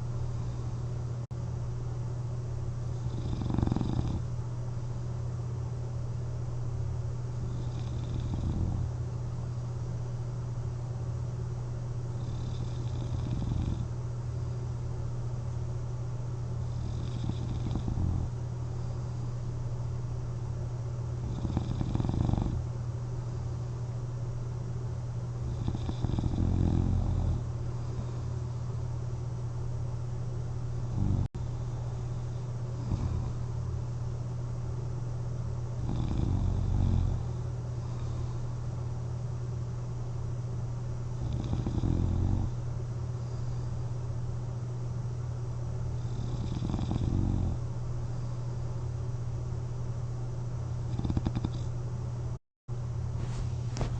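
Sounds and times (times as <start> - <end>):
steady low hum: 0.0 - 53.9
person snoring: 2.9 - 4.3, 7.4 - 8.9, 12.2 - 13.9, 16.6 - 18.4, 21.2 - 22.6, 25.4 - 28.3, 30.8 - 31.3, 32.8 - 33.4, 35.8 - 38.4, 41.2 - 42.6, 46.0 - 47.6, 50.8 - 51.7.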